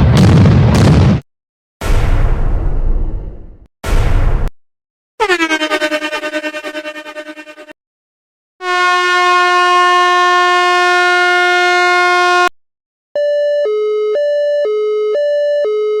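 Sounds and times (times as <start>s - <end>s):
loud horn-like tone: 5.2s - 7.8s, 8.6s - 12.5s
two-tone hi-lo siren: 5.2s - 7.8s, 8.6s - 12.5s, 13.2s - 16.0s.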